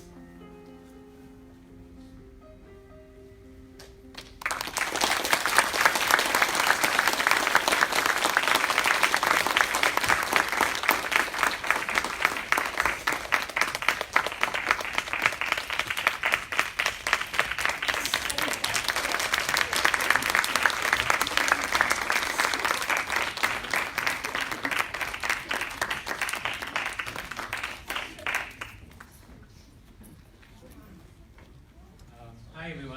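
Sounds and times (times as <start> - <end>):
soft instrumental music: 0.0 - 4.4
audience clapping: 4.1 - 29.2.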